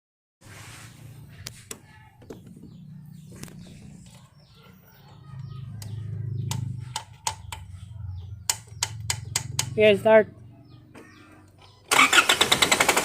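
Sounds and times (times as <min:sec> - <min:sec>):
birds chirping: 0:00.9 - 0:12.4
sharp clicks: 0:05.4 - 0:07.8, 0:08.4 - 0:09.8.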